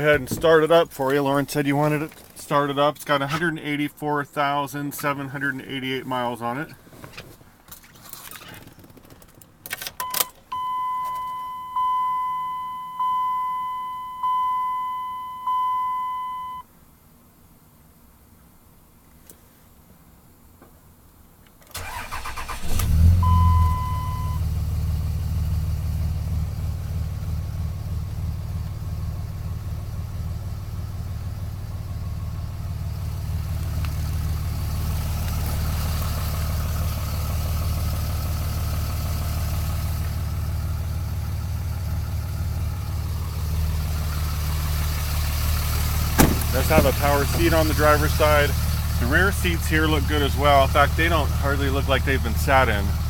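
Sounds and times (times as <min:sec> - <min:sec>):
diesel engine idling: 0:21.8 - 0:53.0.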